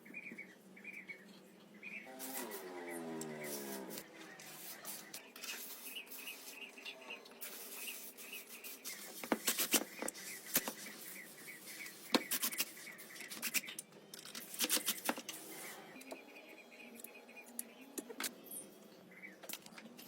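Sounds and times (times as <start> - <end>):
hand scrubbing strokes: 2.1 - 6.8, 7.4 - 13.1.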